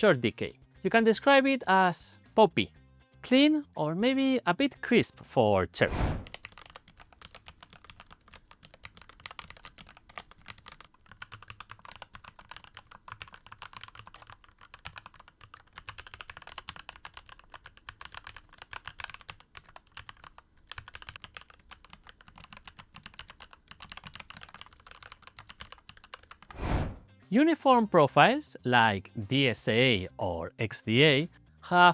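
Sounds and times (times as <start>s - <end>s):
fast mechanical keyboard typing: 6.2s - 26.5s.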